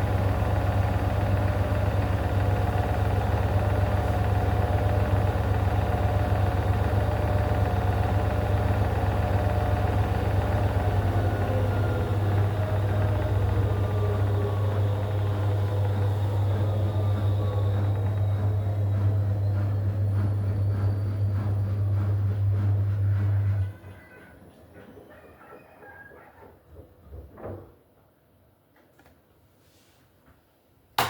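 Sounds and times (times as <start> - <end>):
washing machine spinning: 0.0 - 26.5.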